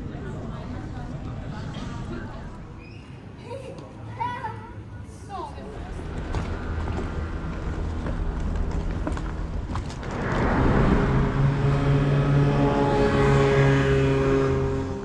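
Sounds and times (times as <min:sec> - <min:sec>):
vehicle engine running: 0:06.0 - 0:15.0.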